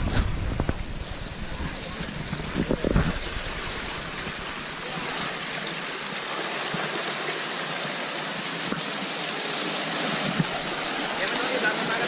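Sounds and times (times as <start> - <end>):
stream water rushing: 0.0 - 12.0.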